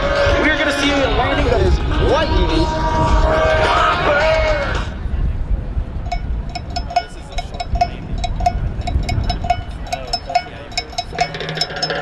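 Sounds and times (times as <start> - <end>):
low rumble: 0.0 - 11.7
light metallic clinks: 6.1 - 12.0.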